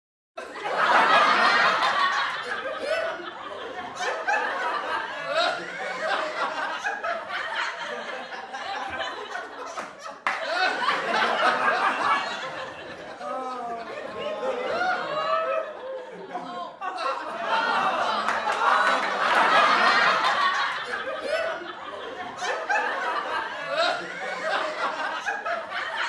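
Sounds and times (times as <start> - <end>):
people laughing: 0.4 - 26.0.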